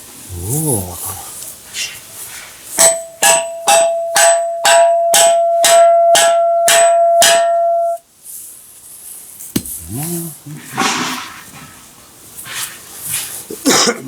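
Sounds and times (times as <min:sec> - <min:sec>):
hammer striking stone: 0:02.8 - 0:08.0, 0:09.5 - 0:09.8.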